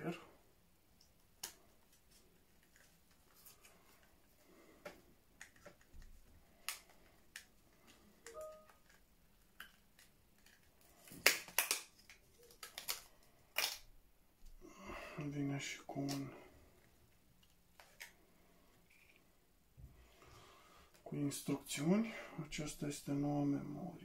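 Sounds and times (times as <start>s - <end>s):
plastic packaging prying open: 9.5s - 13.9s.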